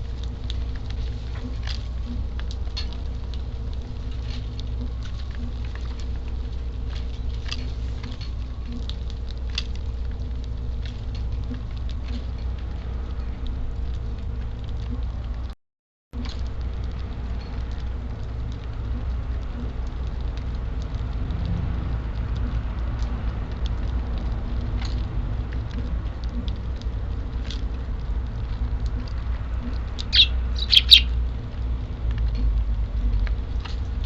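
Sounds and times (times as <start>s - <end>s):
wind rumble on microphone: 0.0s - 15.6s, 16.2s - 34.0s
birds pecking ticks: 25.8s - 32.5s
sharp loud bird chirps: 30.1s - 31.1s.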